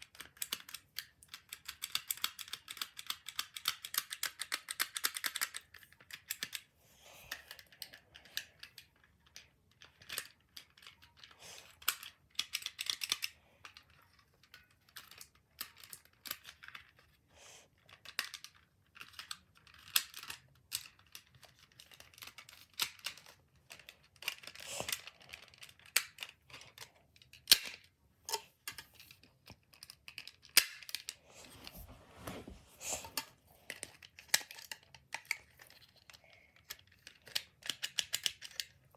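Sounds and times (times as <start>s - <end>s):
plastic toy parts clicking: 0.0s - 6.7s, 7.3s - 17.1s, 17.8s - 31.2s, 33.1s - 38.9s.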